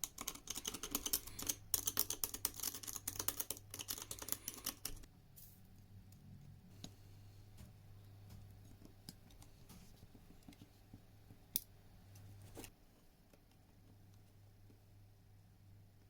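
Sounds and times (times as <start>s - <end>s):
low steady hum: 3.1s - 16.0s.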